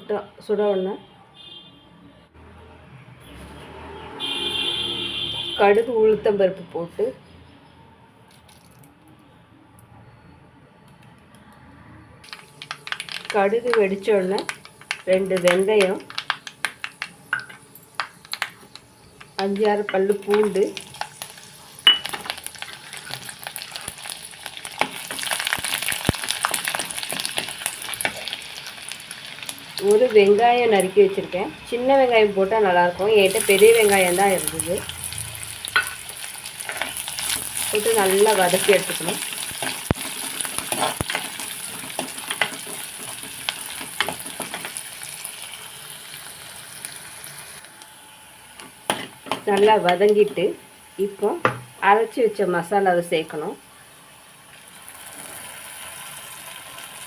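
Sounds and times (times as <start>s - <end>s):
oil pops and crackles: 12.2s - 21.2s, 24.7s - 28.4s
food sizzling in hot oil: 12.2s - 57.0s.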